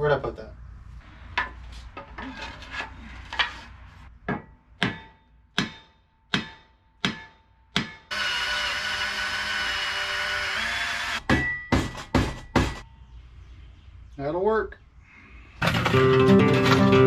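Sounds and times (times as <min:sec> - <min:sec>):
power tool whirring: 0:08.1 - 0:11.2.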